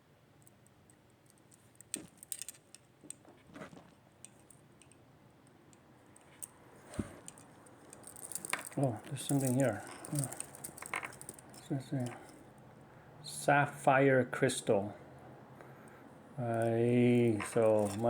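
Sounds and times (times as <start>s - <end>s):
wristwatch bracelet clicking: 7.2s - 12.4s.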